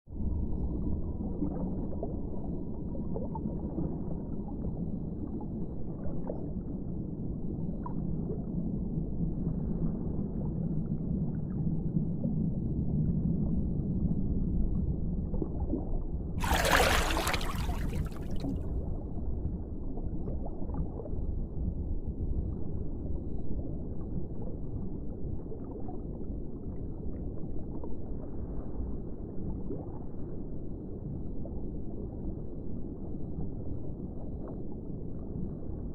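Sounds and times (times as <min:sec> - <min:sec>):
muffled underwater rumble: 0:00.1 - 0:35.9
rush of water: 0:16.4 - 0:18.6.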